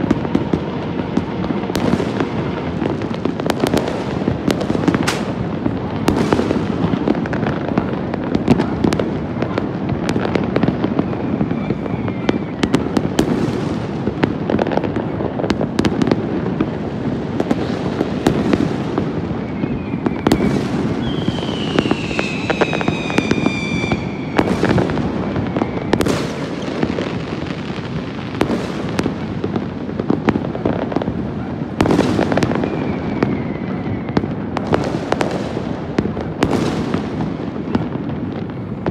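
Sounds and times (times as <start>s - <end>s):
falling firework whistle: 0.0s - 13.8s, 17.4s - 27.7s, 31.7s - 35.6s
fireworks bangs and crackle: 0.0s - 38.9s.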